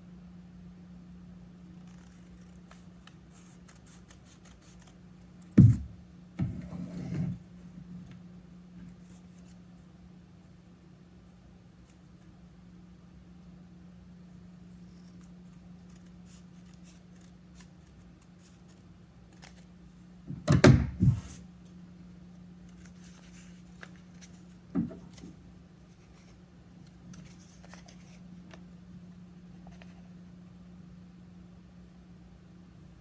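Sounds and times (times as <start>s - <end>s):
steady low hum: 0.0s - 33.0s
knocks on work table: 5.6s - 6.5s.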